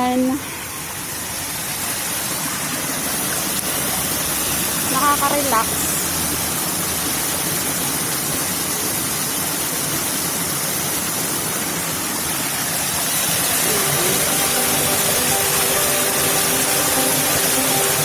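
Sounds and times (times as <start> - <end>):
falling water rushing: 0.0 - 18.0
music: 13.6 - 18.0.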